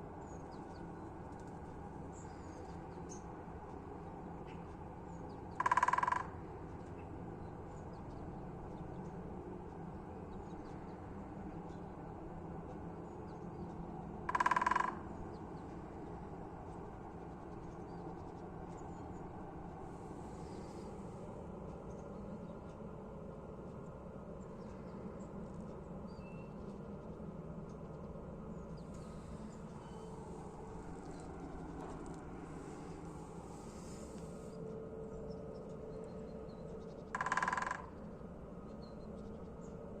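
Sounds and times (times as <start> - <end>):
low background hum: 0.0 - 40.0
woodpecker drumming: 5.5 - 6.5, 14.2 - 16.3, 37.0 - 38.2
crow cawing: 5.6 - 6.4, 14.3 - 15.1, 37.1 - 38.0.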